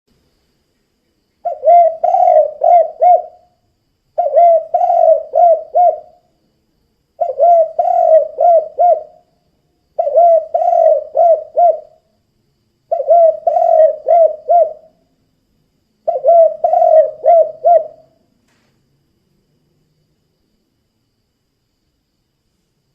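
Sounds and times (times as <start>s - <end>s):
dove cooing: 1.4s - 3.5s, 4.2s - 6.2s, 7.2s - 9.2s, 10.0s - 12.0s, 12.9s - 14.9s, 16.1s - 18.2s.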